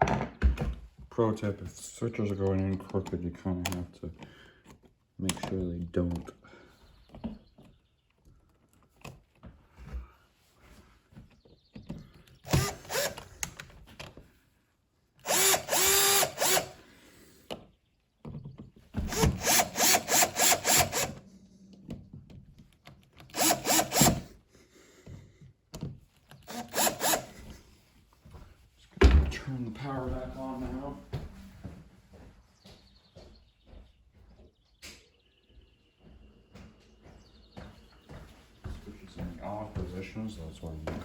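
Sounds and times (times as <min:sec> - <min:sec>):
cordless drill driving screws: 0:12.4 - 0:13.7, 0:15.2 - 0:16.9, 0:19.0 - 0:21.2, 0:23.2 - 0:24.4, 0:26.3 - 0:27.6.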